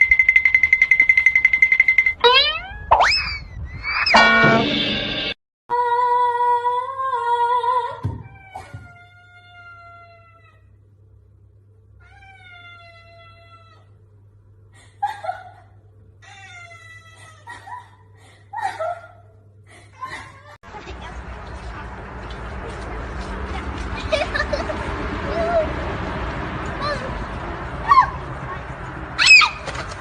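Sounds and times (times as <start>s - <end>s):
short loud pitched tone: 2.2s - 5.4s.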